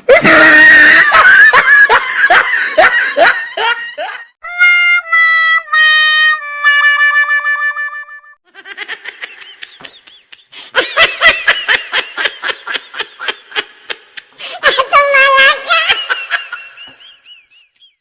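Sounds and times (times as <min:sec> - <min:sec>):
laughter: 0:00.1 - 0:04.4, 0:08.4 - 0:18.0.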